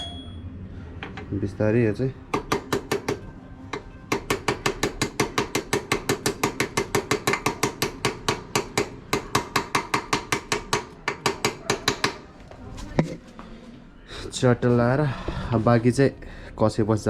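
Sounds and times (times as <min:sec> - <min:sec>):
hammer tapping metal: 0:02.3 - 0:12.3.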